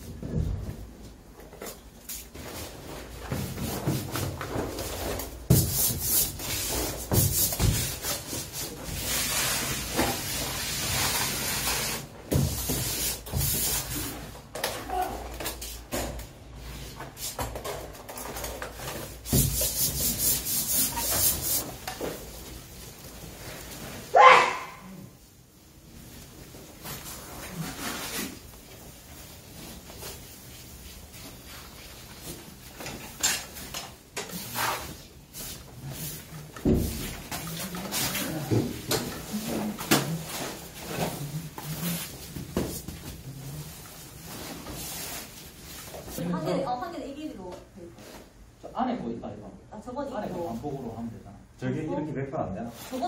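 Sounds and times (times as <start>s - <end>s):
hand sanding a wall: 5.5s - 14.2s, 19.3s - 21.8s.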